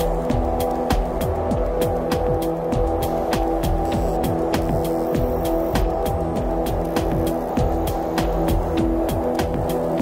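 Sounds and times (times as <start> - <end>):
experimental rock music: 0.0 - 10.0.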